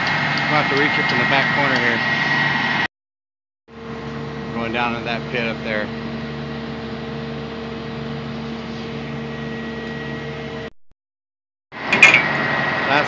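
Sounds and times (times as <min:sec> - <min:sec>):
truck engine running: 0:00.0 - 0:02.9, 0:03.7 - 0:10.7.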